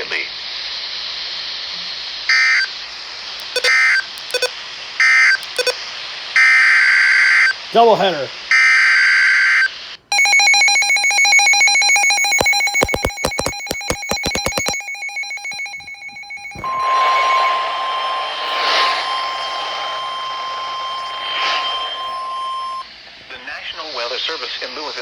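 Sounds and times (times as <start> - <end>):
long steady warning tone: 2.3 - 2.8, 3.4 - 5.8, 8.5 - 22.9
pulsing electronic alarm: 2.3 - 2.8, 3.4 - 5.8, 8.5 - 22.9
buzzing data burst: 3.4 - 5.8, 11.3 - 22.8
radio static: 12.3 - 22.8.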